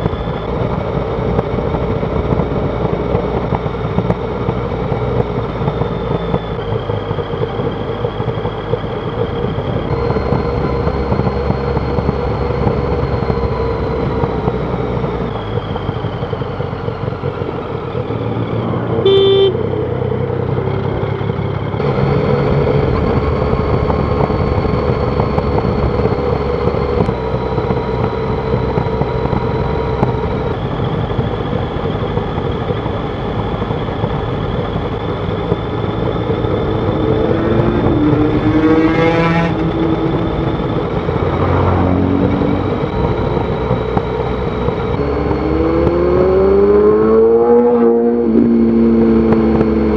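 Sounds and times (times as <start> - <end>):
motorcycle engine running: 0.0 - 49.9
short horn toot: 19.0 - 19.7.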